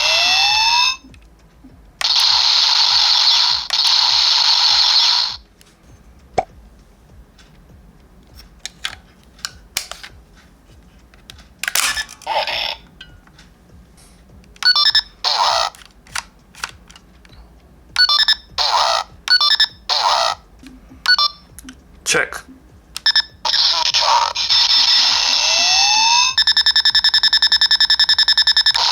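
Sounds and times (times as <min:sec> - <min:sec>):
toy electronic sound effects: 0:00.0 - 0:01.2, 0:02.0 - 0:05.4, 0:11.8 - 0:12.9, 0:14.6 - 0:15.9, 0:18.0 - 0:21.7, 0:23.0 - 0:28.9
keypad beeps: 0:14.6 - 0:15.8, 0:18.0 - 0:21.8, 0:22.5 - 0:28.9.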